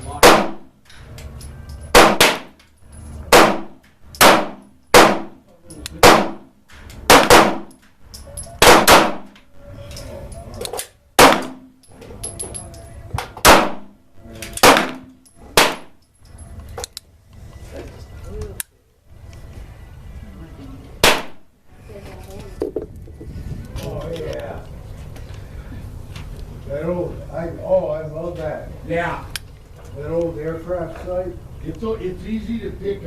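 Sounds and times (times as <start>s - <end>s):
gunshots with echo: 1.9s - 2.5s, 3.3s - 5.4s, 7.1s - 7.7s, 8.6s - 9.3s, 14.6s - 16.0s, 21.0s - 21.4s.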